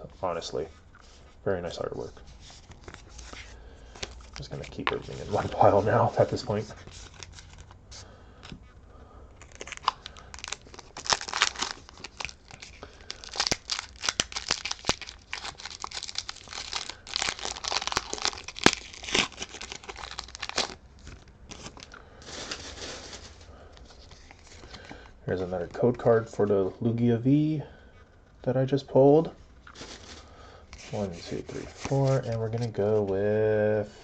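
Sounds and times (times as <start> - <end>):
foil wrapper tearing and crinkling: 9.4 - 23.4.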